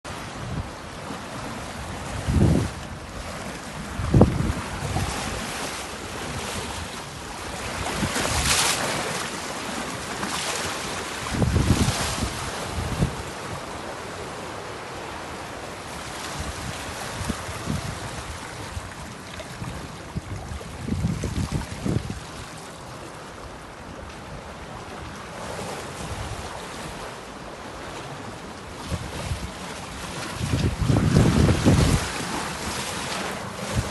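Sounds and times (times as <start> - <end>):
wind buffeting microphone: 0.1 - 1.0, 1.6 - 8.8, 11.2 - 13.8, 16.0 - 22.6, 28.8 - 33.9
water rushing past hull: 0.1 - 33.9.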